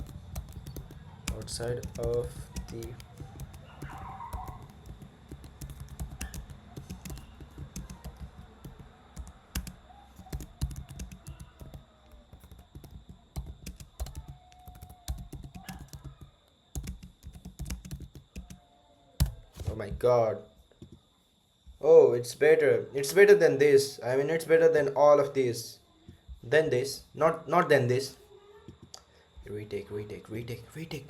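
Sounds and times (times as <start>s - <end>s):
typing on computer keyboard: 0.0s - 18.6s.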